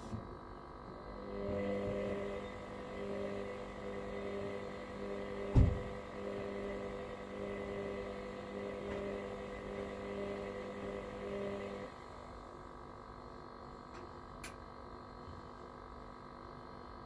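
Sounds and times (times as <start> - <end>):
washer-dryer humming: 0.0 - 17.0
low thump: 5.5 - 6.0.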